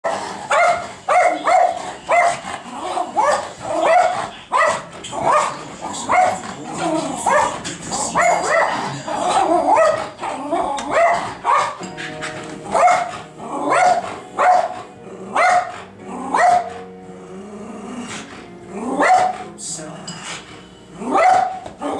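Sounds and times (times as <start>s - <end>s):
dog barking rapidly: 0.1s - 11.9s, 12.7s - 16.8s, 19.0s - 19.5s, 21.1s - 21.9s.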